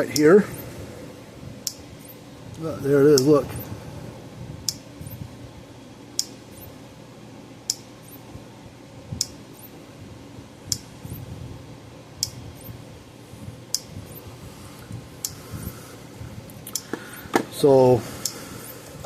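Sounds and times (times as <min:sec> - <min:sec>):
electric fence charger ticking: 0:00.0 - 0:00.7, 0:01.6 - 0:03.7, 0:04.6 - 0:05.2, 0:06.1 - 0:06.8, 0:07.6 - 0:08.3, 0:10.6 - 0:11.3, 0:12.2 - 0:12.8, 0:13.7 - 0:14.3, 0:15.2 - 0:15.8, 0:16.5 - 0:19.0.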